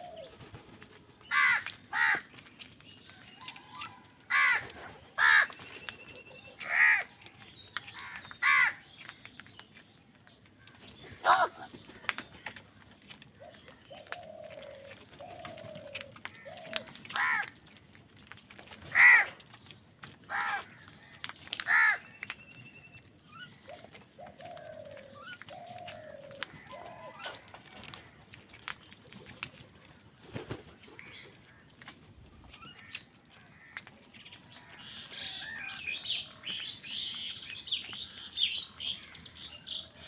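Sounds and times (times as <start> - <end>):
crows cawing: 1.3 - 2.3, 4.3 - 5.5, 6.6 - 7.1, 8.0 - 8.8, 11.2 - 12.1, 15.8 - 17.6, 18.9 - 19.4, 20.3 - 22.1, 32.6 - 33.9, 34.6 - 35.9.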